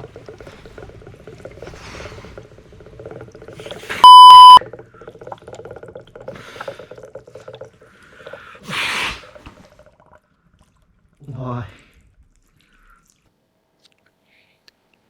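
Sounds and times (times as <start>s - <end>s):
water pouring and splashing: 0.0s - 4.0s, 4.6s - 13.3s
loud electronic alarm beep: 4.0s - 4.6s
low buzzing hum: 4.0s - 4.6s.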